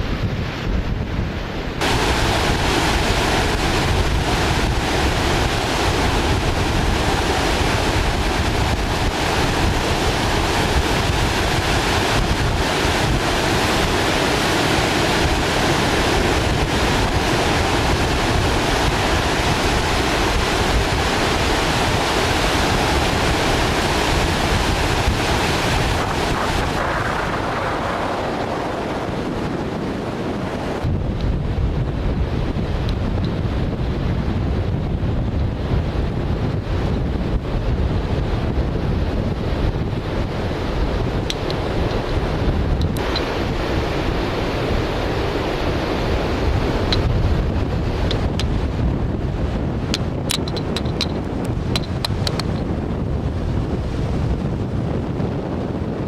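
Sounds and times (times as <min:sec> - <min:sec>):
wind buffeting microphone: 0:00.0 - 0:56.0.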